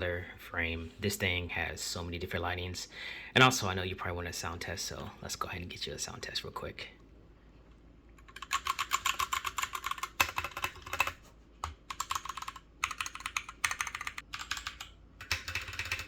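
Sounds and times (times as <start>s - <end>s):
mechanical keyboard typing: 8.2s - 16.0s.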